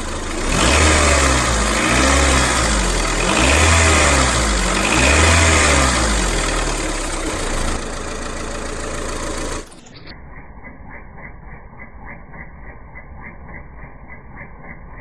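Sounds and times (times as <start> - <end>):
car engine revving: 0.0 - 10.0.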